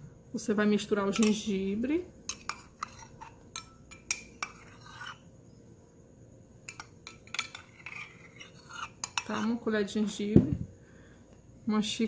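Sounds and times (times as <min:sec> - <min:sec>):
metal spoon clinking on a pan: 0:01.1 - 0:01.5, 0:02.3 - 0:05.2, 0:06.7 - 0:09.6.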